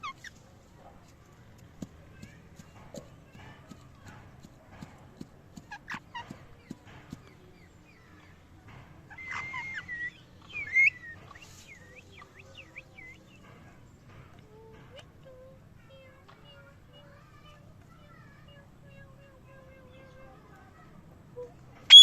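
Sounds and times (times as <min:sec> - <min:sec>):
parrot squawk: 0:09.1 - 0:10.0
parrot chirps and whistles: 0:09.1 - 0:11.1.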